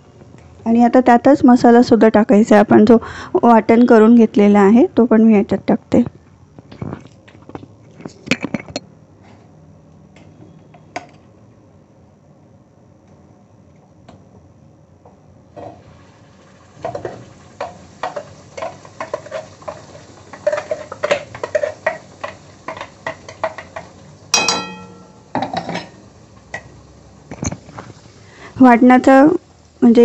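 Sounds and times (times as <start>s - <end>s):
metal spoon scraping pan: 18.0s - 25.9s
ringing metallic clanks: 24.4s - 25.9s.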